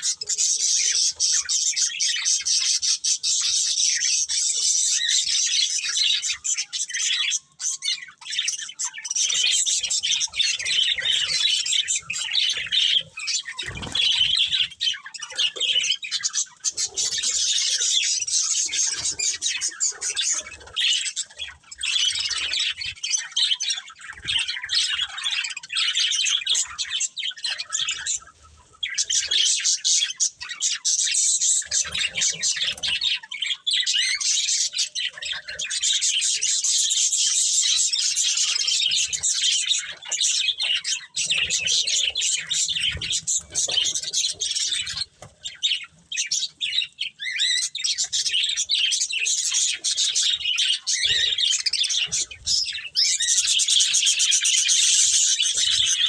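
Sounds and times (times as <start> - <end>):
budgerigars chirping and chattering: 0.0 - 56.0.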